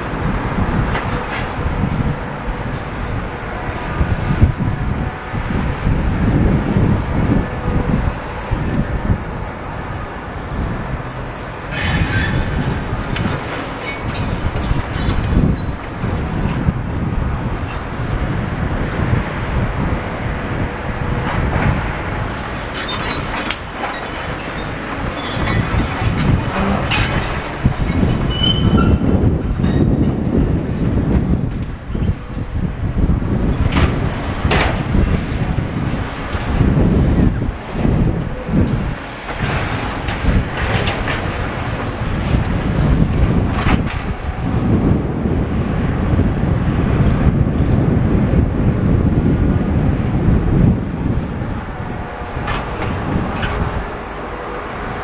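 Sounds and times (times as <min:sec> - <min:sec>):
excavator low rumble: 0:00.0 - 0:55.0
wind on microphone: 0:00.0 - 0:55.0
metallic squeals and clanks: 0:11.7 - 0:16.4, 0:22.7 - 0:30.0.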